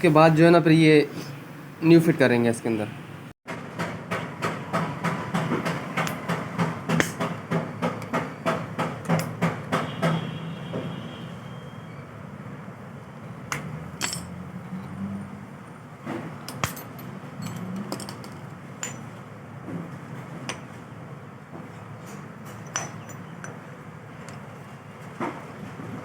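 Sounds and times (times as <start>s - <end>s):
metallic clinks and knocks: 14.0s - 14.4s, 16.5s - 19.2s, 22.5s - 23.6s.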